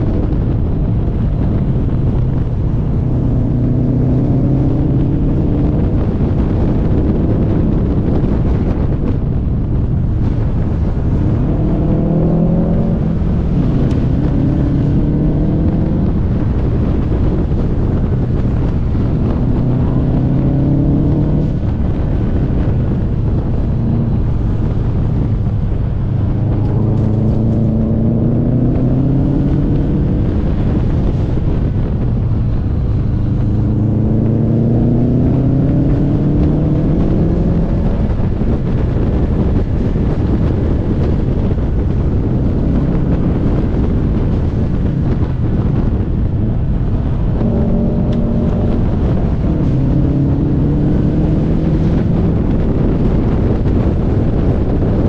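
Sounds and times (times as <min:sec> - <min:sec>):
car engine accelerating hard: 0:00.0 - 0:55.0
wind and road noise: 0:00.0 - 0:55.0.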